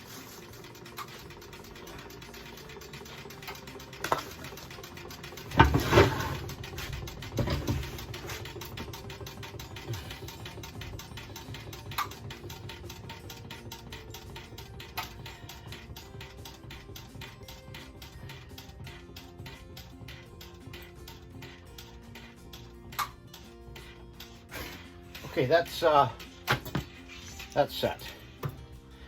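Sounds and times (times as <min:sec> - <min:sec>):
rapid mechanical ticking: 0:00.0 - 0:29.0
loud mechanical clunk: 0:05.4 - 0:08.8.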